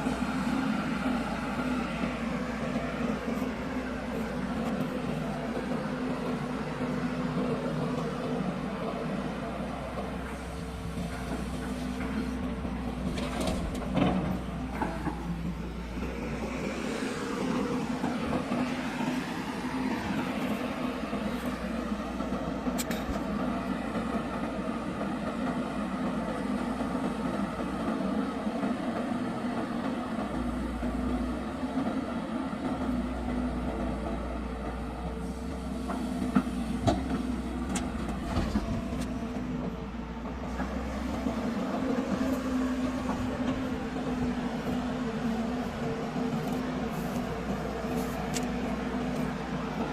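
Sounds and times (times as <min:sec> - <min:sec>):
heavy diesel machinery running: 0:00.0 - 0:49.9.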